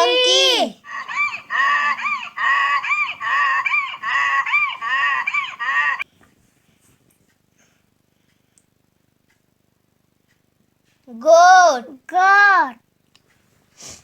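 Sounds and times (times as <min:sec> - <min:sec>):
donkey braying: 0:00.0 - 0:06.0.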